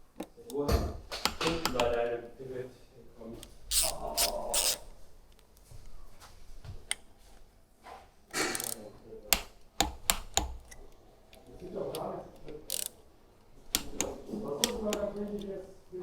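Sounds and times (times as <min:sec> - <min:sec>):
sharp ratchet-like clicks: 0:03.7 - 0:04.8, 0:08.4 - 0:10.7, 0:12.6 - 0:13.0.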